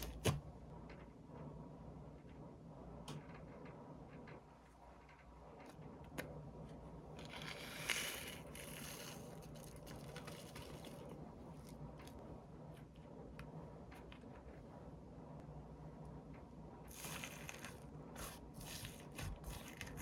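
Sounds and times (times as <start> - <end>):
slime squishing and scraping: 0.0 - 0.4, 7.1 - 12.2, 16.9 - 20.0.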